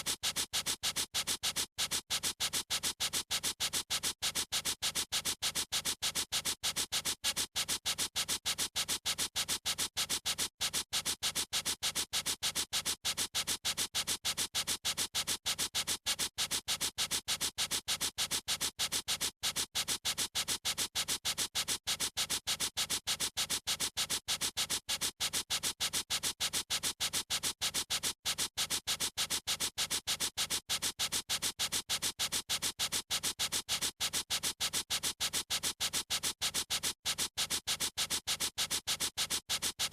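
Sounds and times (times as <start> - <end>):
marker scribbling on paper: 36.6 - 39.9.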